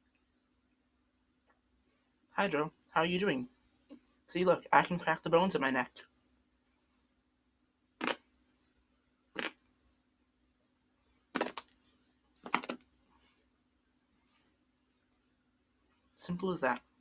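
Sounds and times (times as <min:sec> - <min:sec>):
dry pasta crunching between teeth: 0:09.4 - 0:09.6, 0:11.4 - 0:11.8, 0:12.5 - 0:12.9.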